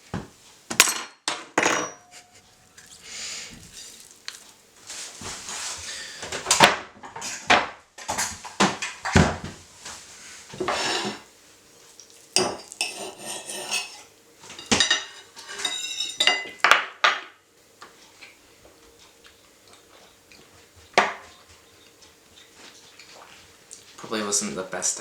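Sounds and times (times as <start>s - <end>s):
cutlery and dishes clattering: 0.7s - 2.3s, 10.6s - 11.3s, 12.4s - 17.3s.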